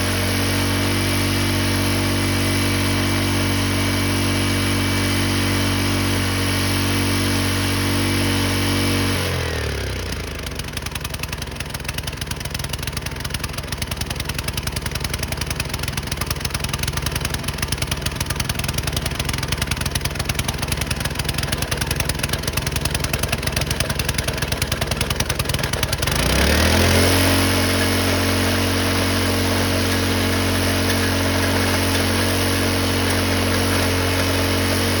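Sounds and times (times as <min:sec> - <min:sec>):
drilling rig engine running: 0:00.0 - 0:09.2, 0:16.9 - 0:35.0
rock drill hammering: 0:15.2 - 0:35.0.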